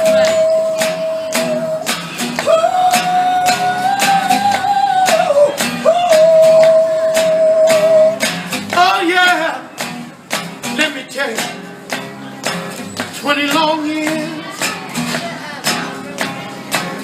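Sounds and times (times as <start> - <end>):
held melody notes: 0.0 - 11.1
steady percussive beat: 0.0 - 17.0.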